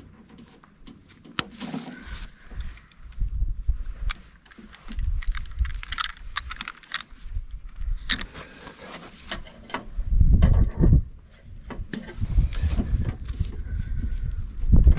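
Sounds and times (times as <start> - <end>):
hand tools and wires rattling: 8.1 - 13.2.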